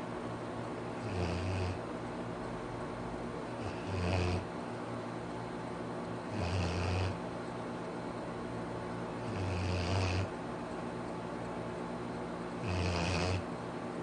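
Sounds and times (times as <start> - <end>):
dog snoring: 1.0 - 1.8, 3.6 - 4.5, 6.3 - 7.2, 9.2 - 10.3, 12.6 - 13.5.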